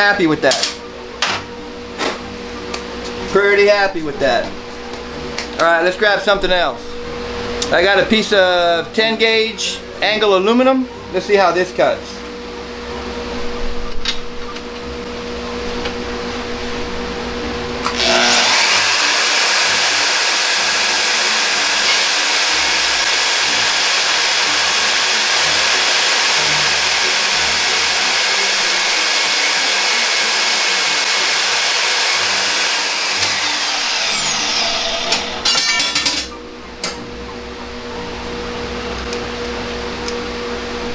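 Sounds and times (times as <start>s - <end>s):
band saw running: 17.8s - 36.4s
saw grinding through aluminum: 17.9s - 36.3s.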